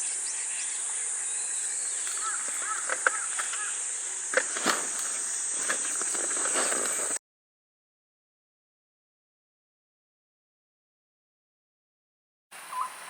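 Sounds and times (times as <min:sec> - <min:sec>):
night insects chorus: 0:00.0 - 0:07.2.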